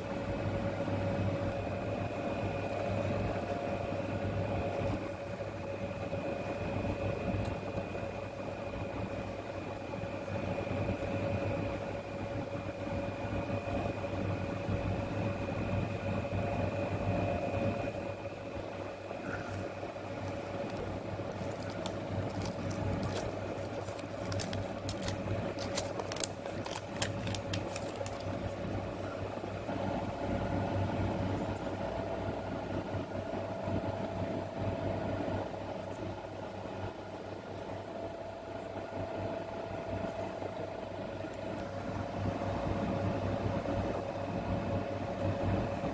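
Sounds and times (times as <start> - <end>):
machine hum: 0.0 - 35.7.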